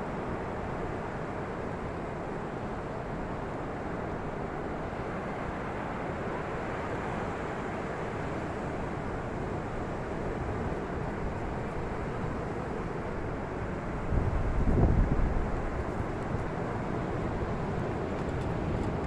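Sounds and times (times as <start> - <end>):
wind on microphone: 14.1 - 16.3.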